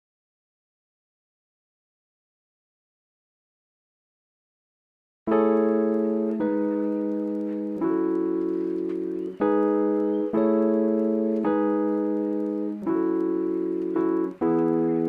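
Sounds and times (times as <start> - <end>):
slow piano piece: 5.3 - 15.0.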